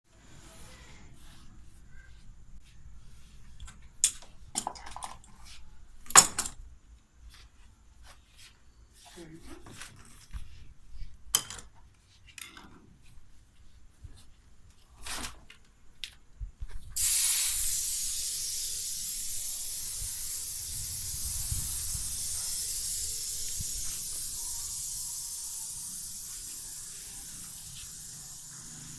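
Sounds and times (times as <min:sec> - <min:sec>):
air conditioner blowing air: 0:13.8 - 0:28.9.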